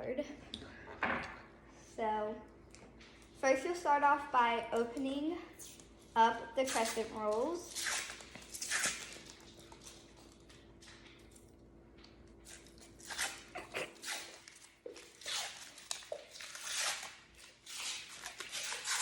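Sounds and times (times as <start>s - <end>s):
faint steady hum: 0.0s - 19.0s
paper wrapper tearing: 7.7s - 10.5s, 12.5s - 19.0s.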